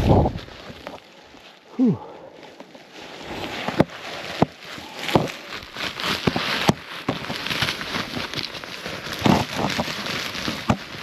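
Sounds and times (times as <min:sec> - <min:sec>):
snowshoes crunching in snow: 0:00.0 - 0:11.0
person breathing hard: 0:01.7 - 0:02.7.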